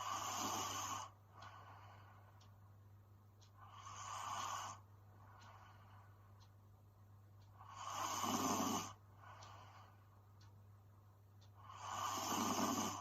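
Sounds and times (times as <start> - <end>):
woman snoring: 0.0 - 1.1, 7.6 - 9.0, 11.6 - 13.0.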